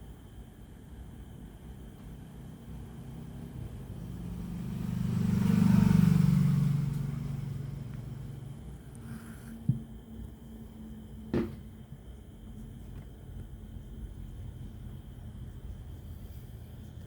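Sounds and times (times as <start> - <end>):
road vehicle passing: 2.3 - 8.6.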